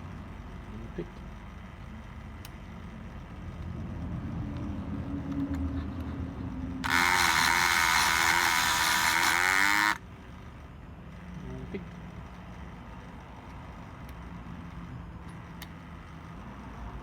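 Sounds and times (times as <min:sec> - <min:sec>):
rotary tool high buzz: 0:06.4 - 0:13.7.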